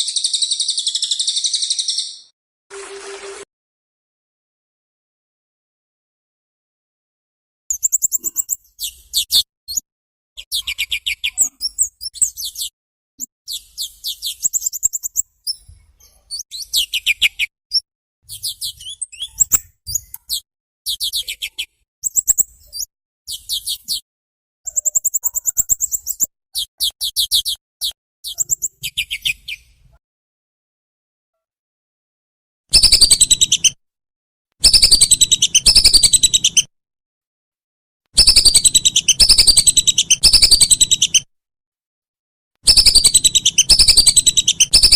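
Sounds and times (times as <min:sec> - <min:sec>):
small bird trilling song: 0:00.0 - 0:02.3, 0:07.7 - 0:09.8, 0:10.4 - 0:12.7, 0:13.5 - 0:24.0, 0:24.7 - 0:29.8, 0:32.7 - 0:33.8, 0:34.6 - 0:36.7, 0:38.2 - 0:41.3, 0:42.7 - 0:44.9.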